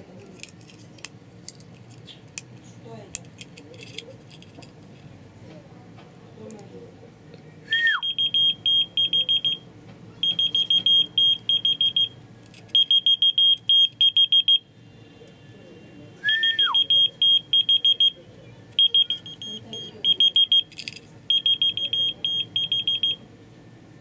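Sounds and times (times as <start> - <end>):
whistle falling in pitch: 16.2 - 16.8
high-pitched electronic beeping: 18.8 - 20.7, 21.3 - 23.2.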